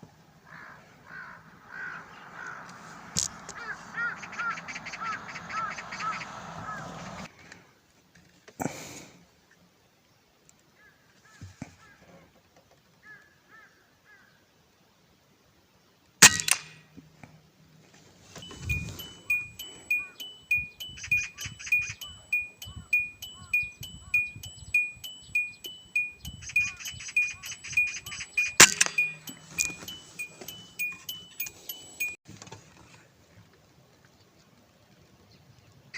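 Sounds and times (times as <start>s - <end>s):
rhythmic ticking: 1.7s - 7.2s, 18.4s - 32.2s
short chime-like tones: 18.4s - 32.2s.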